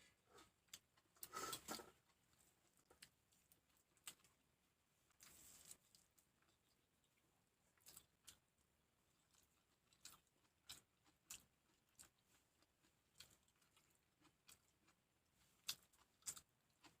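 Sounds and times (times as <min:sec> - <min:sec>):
chewing food crunches: 0:05.2 - 0:17.0.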